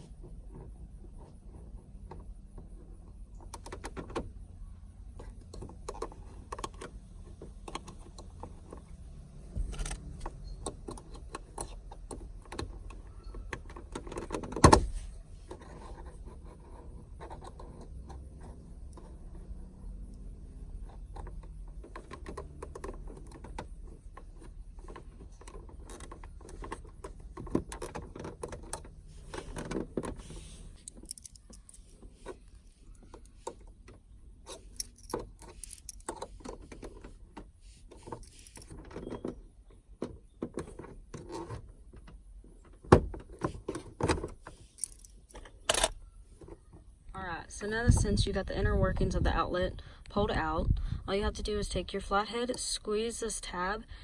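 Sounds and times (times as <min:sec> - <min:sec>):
screwdrivers clicking and scraping metal: 0:15.5 - 0:39.4, 0:43.4 - 0:46.7.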